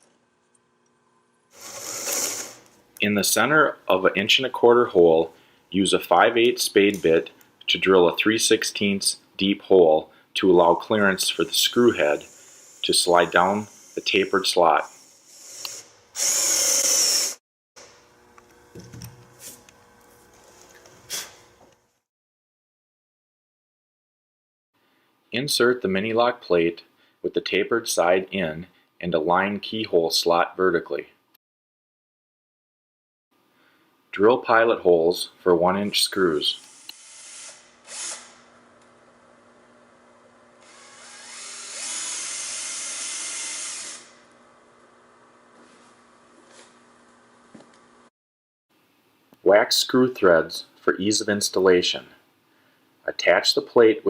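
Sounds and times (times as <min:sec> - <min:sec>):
power drill boring into wood: 0:01.6 - 0:02.7, 0:11.8 - 0:18.0, 0:36.6 - 0:45.5.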